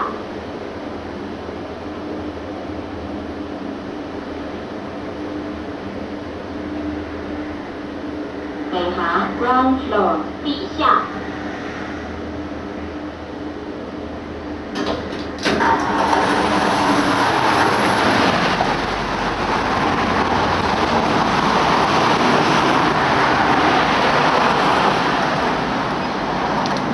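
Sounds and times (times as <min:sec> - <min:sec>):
street traffic rushing: 0:07.1 - 0:14.7, 0:15.4 - 0:26.9
lift door clicks: 0:14.7 - 0:16.6.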